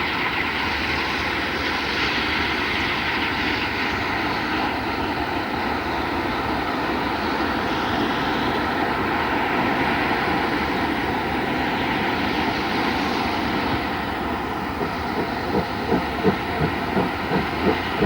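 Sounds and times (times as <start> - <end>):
steam train rushing: 12.7 - 18.0
steam train regular beat: 14.3 - 18.0.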